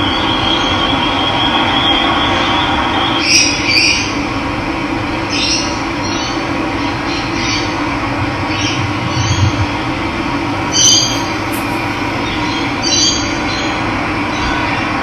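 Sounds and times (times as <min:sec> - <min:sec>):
running water: 0:10.6 - 0:12.9
bird short high calls: 0:10.6 - 0:13.0.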